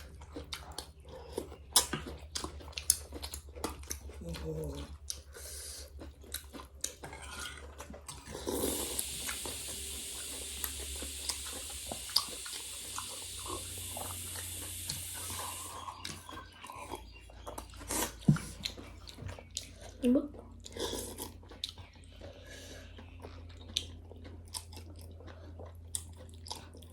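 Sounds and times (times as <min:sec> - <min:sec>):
person chewing: 0:00.0 - 0:26.9
slurping soup: 0:05.2 - 0:19.0
steady hiss: 0:08.4 - 0:15.8.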